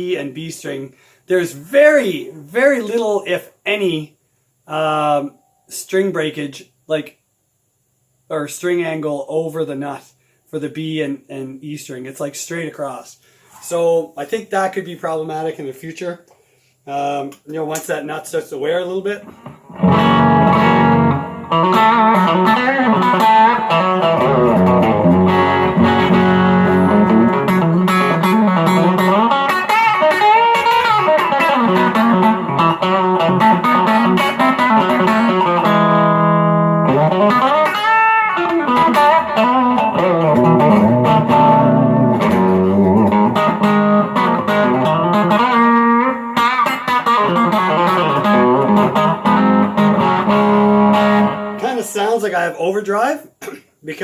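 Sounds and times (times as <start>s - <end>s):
overdriven electric guitar: 19.3s - 51.6s.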